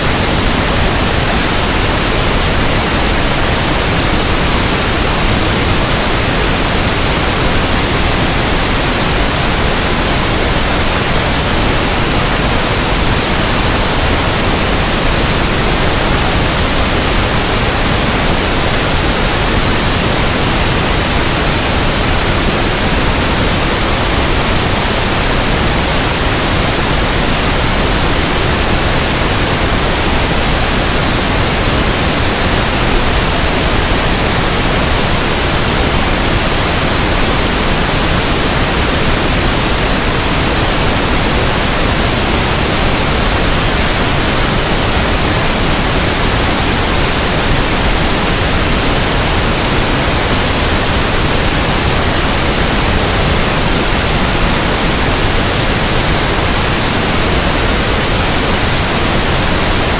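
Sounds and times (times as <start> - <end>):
pink noise hiss: 0.0 - 59.9.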